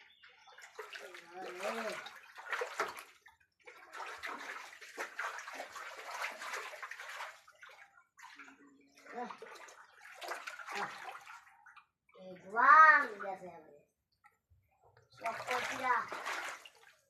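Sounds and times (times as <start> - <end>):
floodwater rushing: 0.6 - 11.5, 15.2 - 17.0
voices: 0.9 - 2.1, 15.1 - 16.2.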